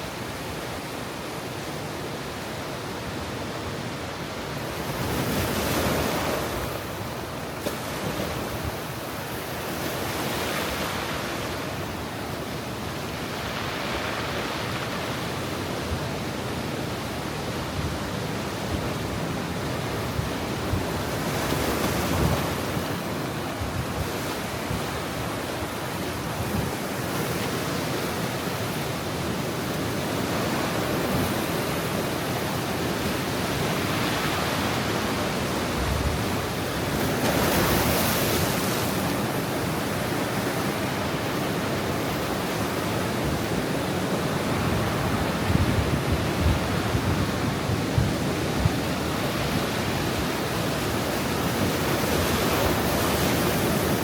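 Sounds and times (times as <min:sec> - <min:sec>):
waves breaking on rocks: 0:20.0 - 0:47.7.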